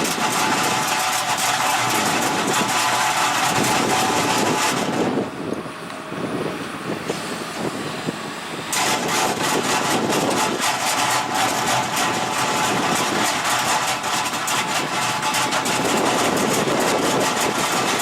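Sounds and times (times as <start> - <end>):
stone saw cutting: 0.0 - 5.2, 8.7 - 18.0
excavator engine: 0.0 - 18.0
dense crackle: 8.7 - 18.0.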